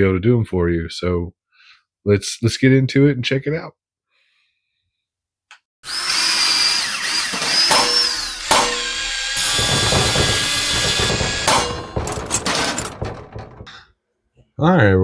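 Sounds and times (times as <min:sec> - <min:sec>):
power tool whining: 0:05.8 - 0:13.6
sharp knocks: 0:07.7 - 0:13.9.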